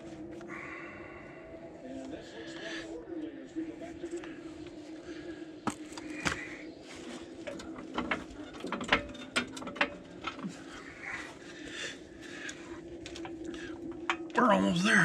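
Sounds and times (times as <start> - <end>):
steady low hum: 0.0 - 15.0
metallic clicks and clanks of tools: 7.4 - 10.7.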